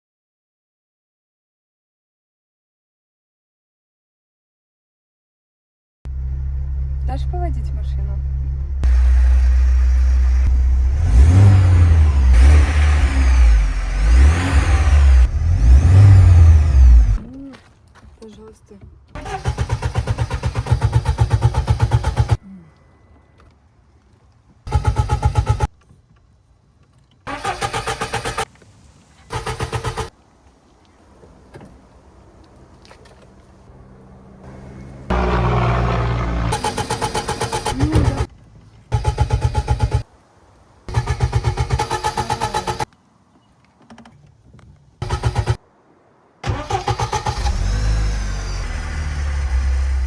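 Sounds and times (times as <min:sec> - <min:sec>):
starter cranking car engine: 0:19.1 - 0:22.4, 0:24.7 - 0:25.7, 0:27.3 - 0:28.5, 0:29.3 - 0:30.1, 0:35.1 - 0:38.3, 0:38.9 - 0:40.1, 0:40.9 - 0:42.9, 0:45.0 - 0:45.6, 0:46.4 - 0:50.0.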